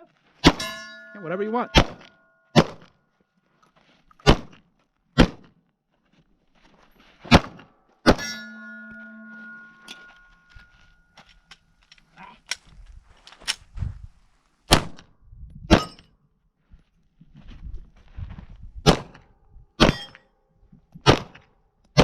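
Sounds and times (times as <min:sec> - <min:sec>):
steel targets ringing: 0:00.5 - 0:02.5, 0:08.1 - 0:11.1
gunshots: 0:01.6 - 0:02.9.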